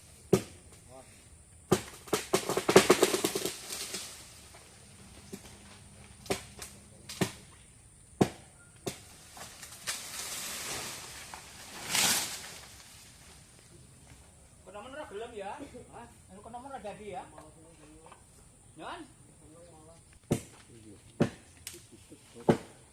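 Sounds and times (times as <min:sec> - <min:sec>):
rustling hiss: 0:00.0 - 0:22.9
sharp knocks and cracks: 0:00.3 - 0:00.8, 0:01.7 - 0:04.6, 0:05.2 - 0:07.6, 0:08.2 - 0:13.4, 0:20.2 - 0:21.8, 0:22.4 - 0:22.8.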